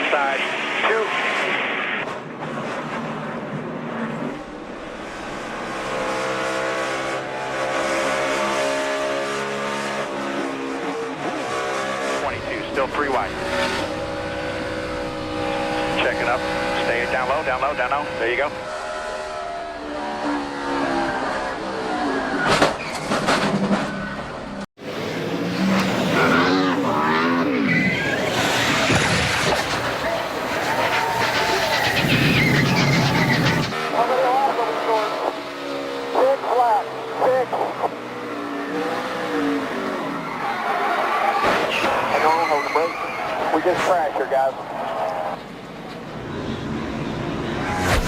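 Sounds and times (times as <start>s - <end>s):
race car engines at high revs: 0.0s - 48.0s
sharp cracks: 28.0s - 33.8s.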